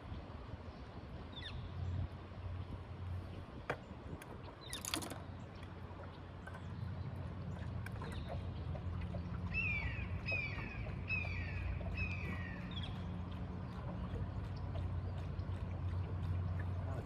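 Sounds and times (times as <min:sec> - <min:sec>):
water splashing: 0:04.3 - 0:17.0
bird calling: 0:09.5 - 0:13.1.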